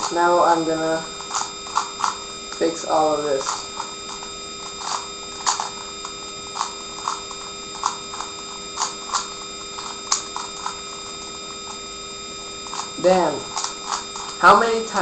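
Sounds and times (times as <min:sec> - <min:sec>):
puzzle cube layers clacking: 0:01.2 - 0:02.2, 0:03.2 - 0:10.8, 0:12.6 - 0:14.4.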